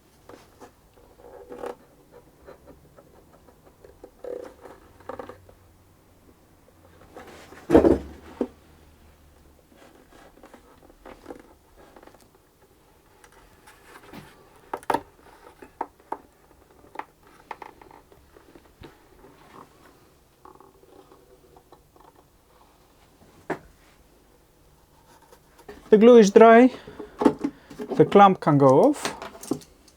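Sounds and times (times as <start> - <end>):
clicks and taps of wood and tools: 27.2 - 29.9.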